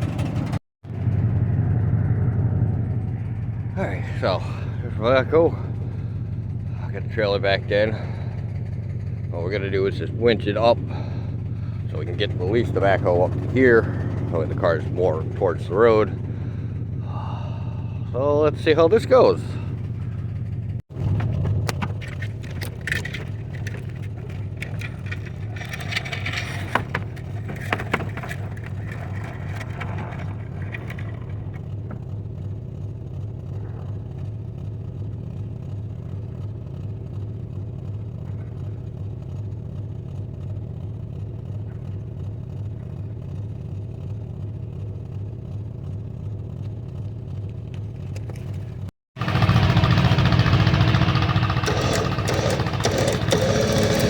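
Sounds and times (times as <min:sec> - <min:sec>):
engine idling: 0:00.0 - 0:54.0
metallic clanks and rattles: 0:21.0 - 0:32.2, 0:48.0 - 0:54.0.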